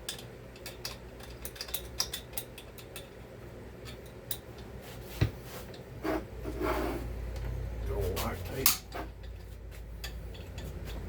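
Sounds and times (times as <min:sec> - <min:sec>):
hand tools clicking and tapping: 0:00.0 - 0:03.1, 0:08.6 - 0:11.0
low steady hum: 0:00.0 - 0:11.0.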